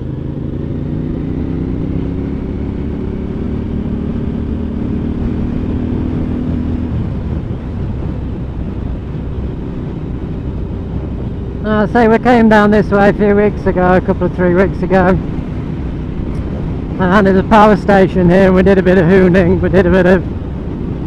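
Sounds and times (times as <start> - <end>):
motorcycle engine running: 0.0 - 21.0
wind noise: 0.0 - 21.0.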